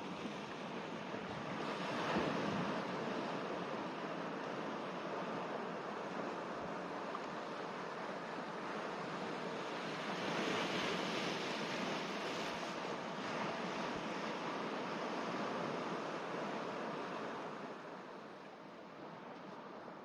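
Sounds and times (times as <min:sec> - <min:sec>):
sea waves washing on shore: 0:00.0 - 0:20.0.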